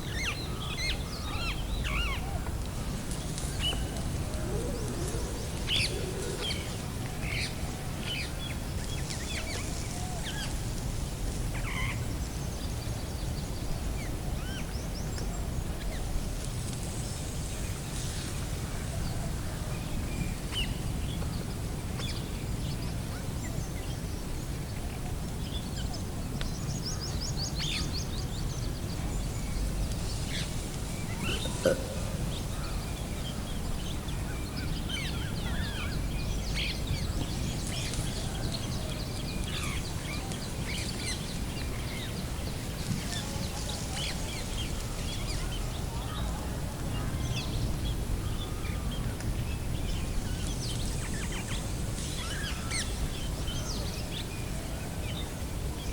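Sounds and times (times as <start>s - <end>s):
small birds chirping: 0.0s - 10.6s, 25.4s - 46.3s.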